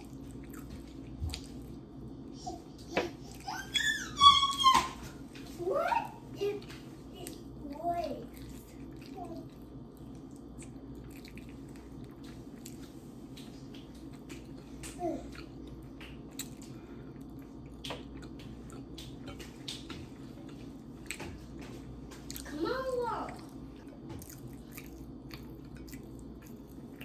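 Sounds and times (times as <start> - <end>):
chewing: 0.0 - 1.8, 6.6 - 22.5, 23.3 - 27.0
low room hum: 0.0 - 27.0.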